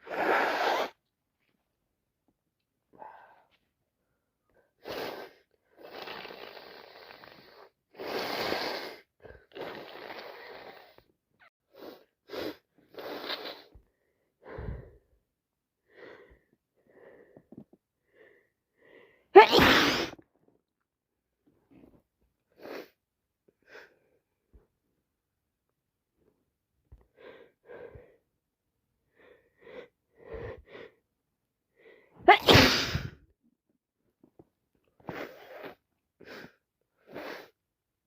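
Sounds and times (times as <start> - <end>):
woman sneezing: 19.4 - 20.2, 32.3 - 33.2
woman sniffling: 32.3 - 33.2.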